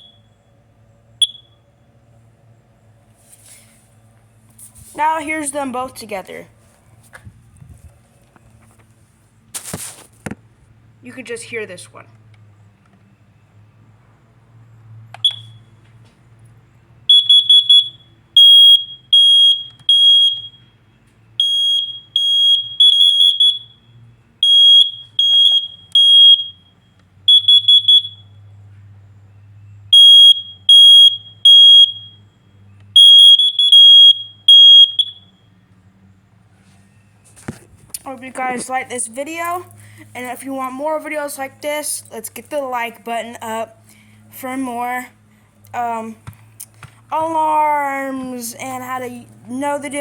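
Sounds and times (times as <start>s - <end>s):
smoke alarm beeping: 0.0s - 0.4s, 1.2s - 1.6s, 15.2s - 15.8s, 17.1s - 20.8s, 21.4s - 28.4s, 29.9s - 35.5s
carbon monoxide alarm beeping: 0.0s - 0.5s, 1.2s - 1.7s, 15.2s - 15.8s, 17.0s - 28.6s, 29.5s - 35.7s.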